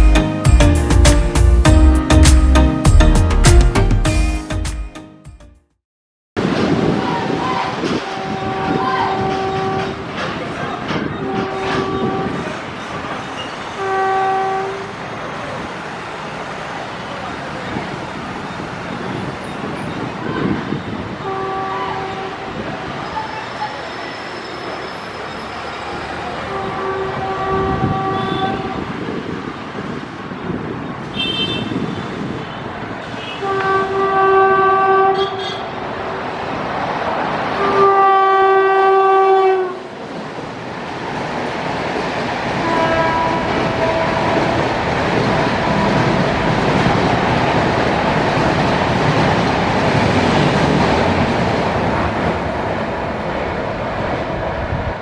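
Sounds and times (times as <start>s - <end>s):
train coaches rushing and rattling: 6.4s - 55.0s
train horn blasts: 7.1s - 10.0s, 11.2s - 12.6s, 13.8s - 15.0s, 21.2s - 22.6s, 26.5s - 28.9s, 33.2s - 35.8s, 37.6s - 39.9s, 42.6s - 44.4s.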